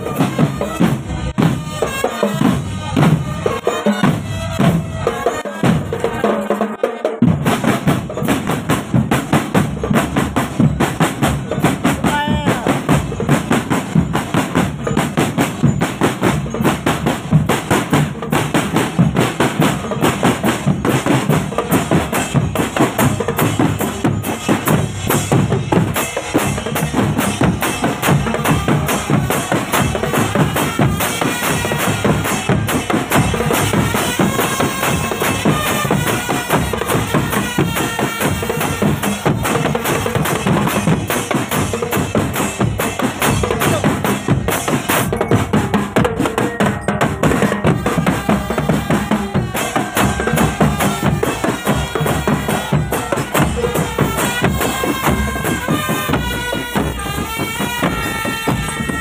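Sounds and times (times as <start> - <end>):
snare and bass drums beating: 0.0 - 59.0
pitched melody: 19.0 - 59.0.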